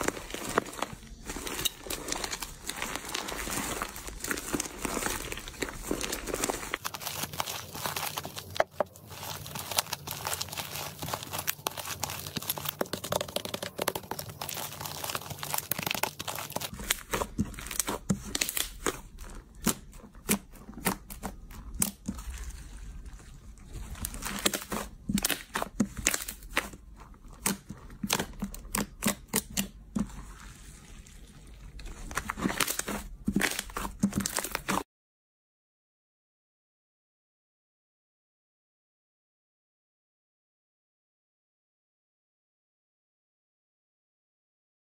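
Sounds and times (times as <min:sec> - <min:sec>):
slime crackling and clicking: 0:00.3 - 0:22.6, 0:24.0 - 0:30.1.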